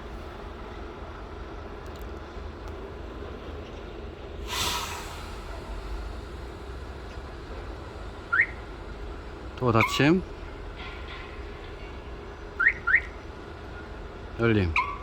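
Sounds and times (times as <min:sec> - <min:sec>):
low vehicle rumble: 0:00.0 - 0:15.0
short hissing burst: 0:04.4 - 0:06.7.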